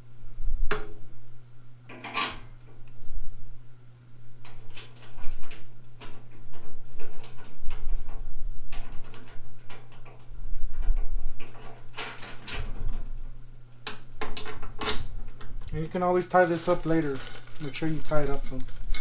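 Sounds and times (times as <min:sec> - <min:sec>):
steady low hum: 0:00.0 - 0:19.0
metal clicks and clatter: 0:04.4 - 0:13.2.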